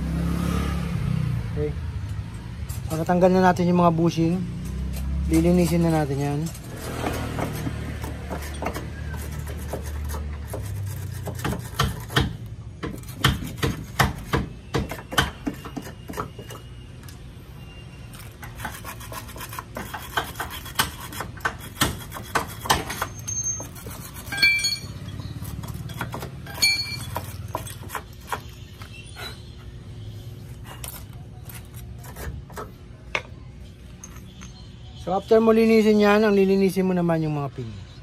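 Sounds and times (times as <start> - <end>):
hand tools knocking on metal: 19.8 - 28.5
ringing metallic clinks: 24.3 - 25.4, 26.5 - 27.3.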